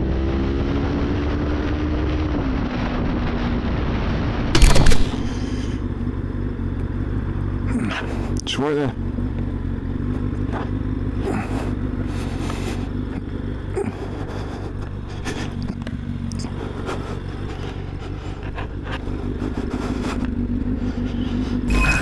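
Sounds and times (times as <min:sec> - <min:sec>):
road noise: 0:00.0 - 0:22.0
vehicle engine running: 0:00.0 - 0:22.0.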